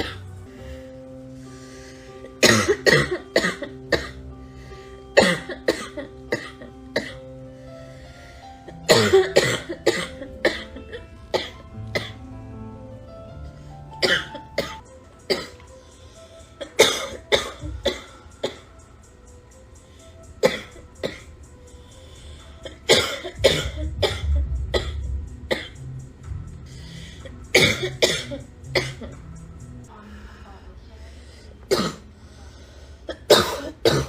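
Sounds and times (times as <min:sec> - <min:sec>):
music playing: 0:00.0 - 0:34.0
girl coughing: 0:02.4 - 0:04.2, 0:05.2 - 0:07.2, 0:08.8 - 0:12.2, 0:14.0 - 0:15.6, 0:16.6 - 0:18.7, 0:20.4 - 0:21.3, 0:22.6 - 0:25.8, 0:27.5 - 0:29.2, 0:31.7 - 0:32.0, 0:33.1 - 0:34.0.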